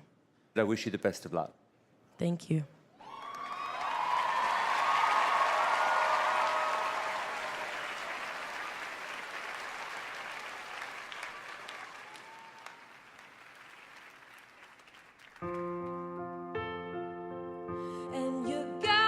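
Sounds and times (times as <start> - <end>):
audience cheering: 3.0 - 15.6
audience applauding: 3.0 - 16.2.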